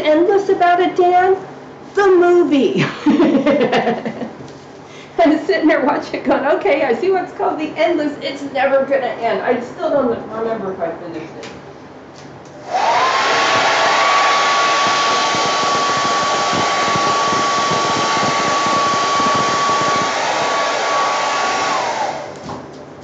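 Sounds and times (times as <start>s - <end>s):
rush of air: 12.6s - 22.5s
hair dryer motor whine: 12.6s - 22.6s.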